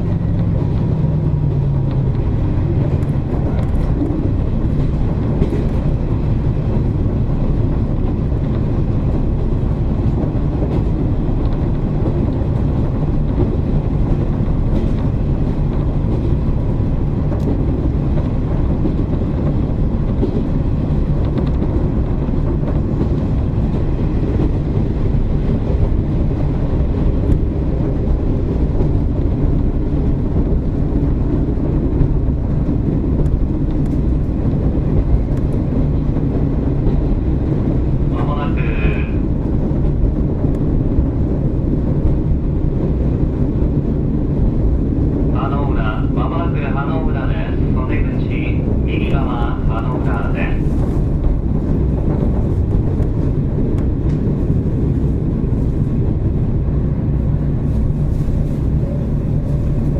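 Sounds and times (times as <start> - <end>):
diesel engine drone: 0.0 - 59.9
wheel-on-rail rumble: 0.0 - 59.9.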